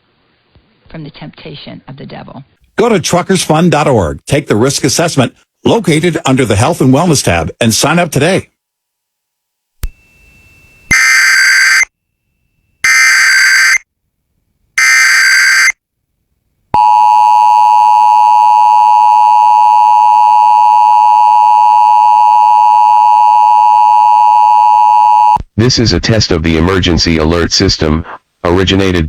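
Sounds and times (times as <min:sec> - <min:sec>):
digital data tone bursts: 0:14.8 - 0:15.8.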